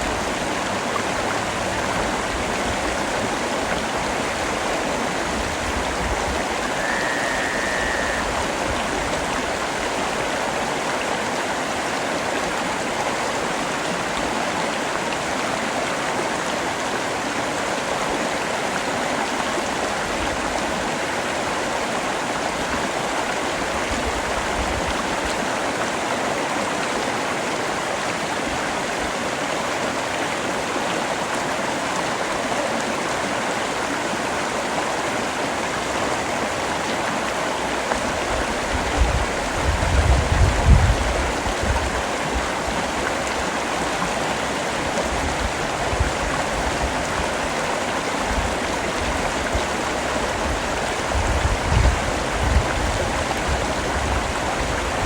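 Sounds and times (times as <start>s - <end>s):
steady rain falling: 0.0s - 55.0s
short thin high tone: 6.6s - 8.6s.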